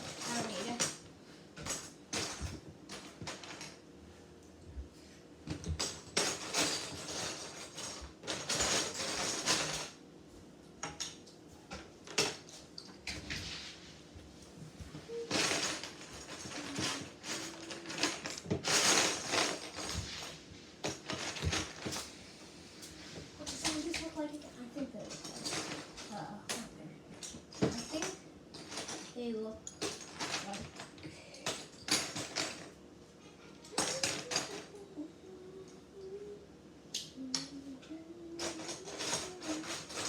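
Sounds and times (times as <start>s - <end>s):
plastic bricks clicking and clattering: 15.3s - 20.0s.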